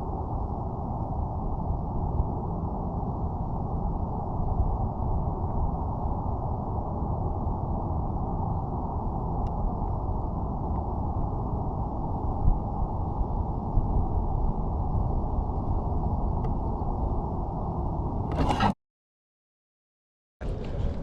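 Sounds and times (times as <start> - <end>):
wind buffeting microphone: 20.4 - 21.0.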